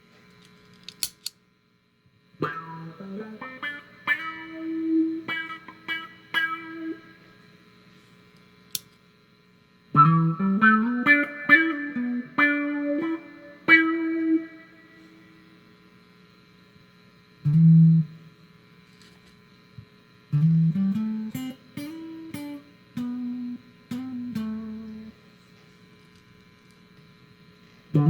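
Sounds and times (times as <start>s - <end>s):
electric guitar notes with auto-wah: 2.4s - 7.3s, 10.0s - 15.2s, 17.4s - 18.2s, 20.3s - 25.1s.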